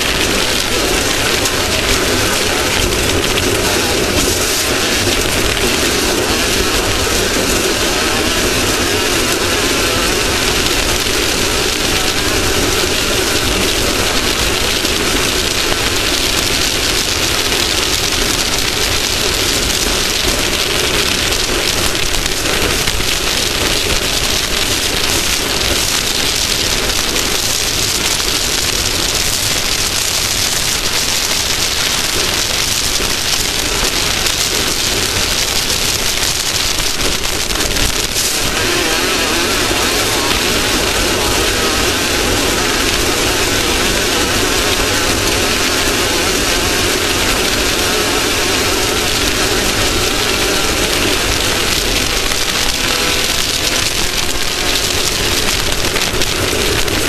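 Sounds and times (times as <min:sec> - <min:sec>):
off-road race vehicle engines: 0:00.0 - 0:29.3, 0:37.0 - 0:57.0.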